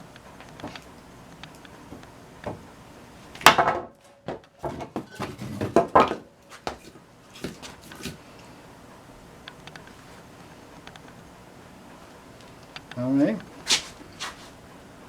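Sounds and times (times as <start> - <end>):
knocks: 3.5 - 6.8.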